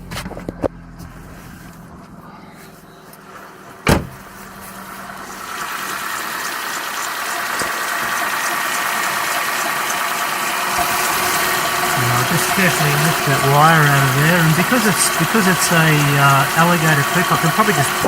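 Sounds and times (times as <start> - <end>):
car engine idling: 0.0 - 18.0
single thump: 3.8 - 4.2.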